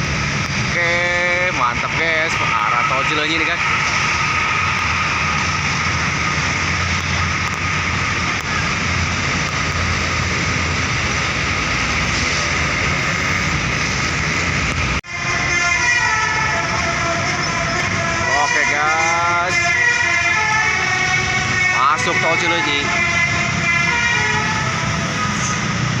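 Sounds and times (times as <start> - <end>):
large vehicle engine running: 0.0 - 15.1
heavy road traffic: 0.0 - 26.0
steady high tone: 0.7 - 13.7
multi-tone bus horn: 15.0 - 25.6.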